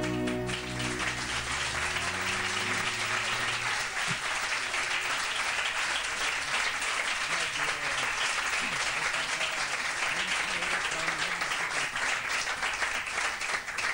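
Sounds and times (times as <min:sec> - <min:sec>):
guitar chord ringing: 0:00.0 - 0:03.8
audience applauding: 0:00.0 - 0:13.9.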